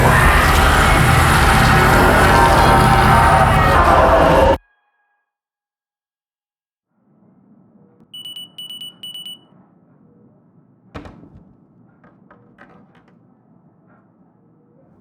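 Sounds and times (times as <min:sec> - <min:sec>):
electronic alarm beeps: 0:08.2 - 0:09.5
thump: 0:11.0 - 0:13.2.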